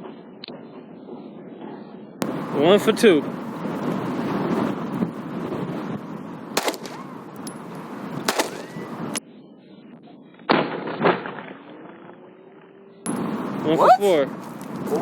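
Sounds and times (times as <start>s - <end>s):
pistol shots: 6.6s - 7.2s, 8.2s - 9.0s.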